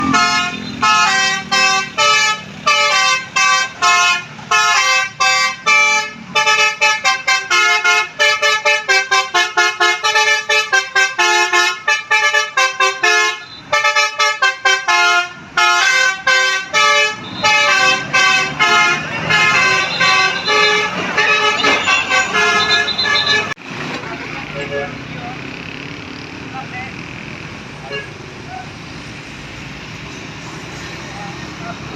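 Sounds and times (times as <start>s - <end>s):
musical bus air horn playing tune: 0.0s - 23.6s.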